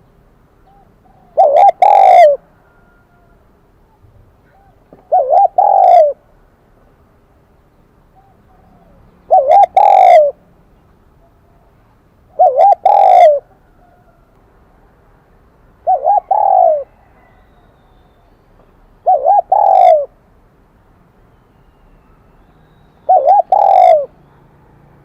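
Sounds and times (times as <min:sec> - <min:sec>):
dove cooing: 0:00.6 - 0:03.4, 0:04.4 - 0:06.2, 0:08.2 - 0:10.4, 0:12.3 - 0:14.2, 0:15.8 - 0:17.4, 0:19.0 - 0:20.2, 0:23.0 - 0:24.2.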